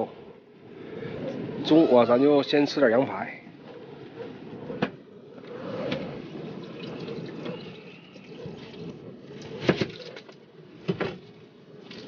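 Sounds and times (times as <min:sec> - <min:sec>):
water splashing in a pot: 0:06.6 - 0:10.4.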